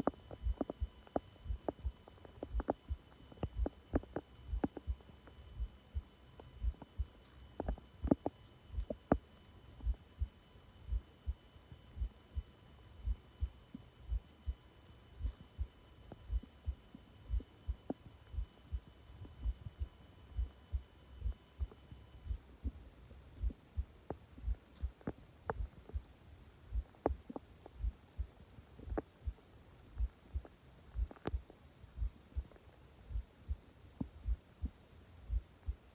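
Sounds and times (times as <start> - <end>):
heartbeat thumping: 0.0 - 9.2, 9.8 - 10.3, 10.9 - 11.4, 12.0 - 12.4, 13.0 - 13.5, 14.1 - 14.3, 15.2 - 15.7, 16.3 - 22.8, 23.4 - 26.0, 26.7 - 29.4, 30.0 - 31.4, 32.0 - 35.9.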